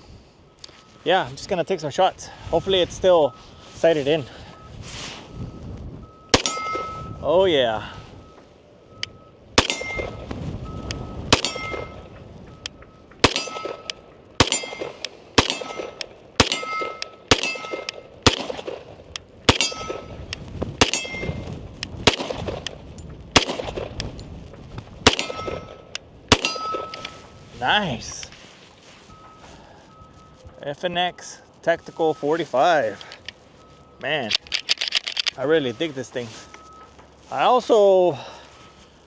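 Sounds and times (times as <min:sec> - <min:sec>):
pistol shots: 0:06.3 - 0:07.1, 0:09.6 - 0:10.4, 0:11.3 - 0:12.2, 0:13.2 - 0:24.2, 0:25.0 - 0:27.3
short metallic ring: 0:06.3 - 0:07.6, 0:08.2 - 0:18.1, 0:19.5 - 0:21.5, 0:25.1 - 0:27.4.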